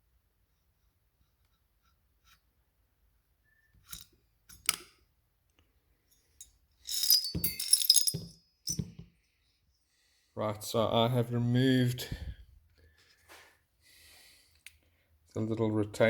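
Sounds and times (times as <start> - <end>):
metallic clinks and rattles: 6.1 - 9.0.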